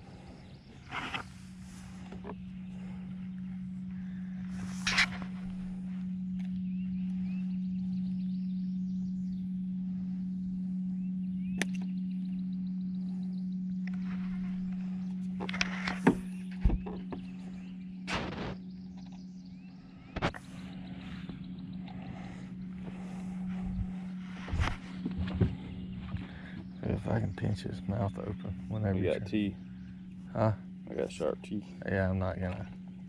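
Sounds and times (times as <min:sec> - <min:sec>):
faint chirping: 0:00.0 - 0:33.0
steady low hum: 0:00.0 - 0:33.0
knocks and clatters in boat: 0:15.4 - 0:17.3, 0:25.0 - 0:27.2.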